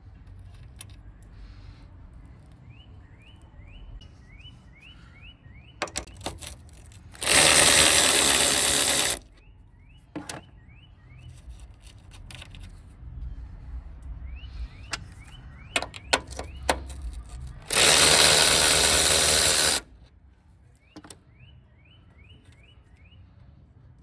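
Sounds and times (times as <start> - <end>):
metallic clicks and knocks: 5.8 - 9.2, 14.8 - 19.8.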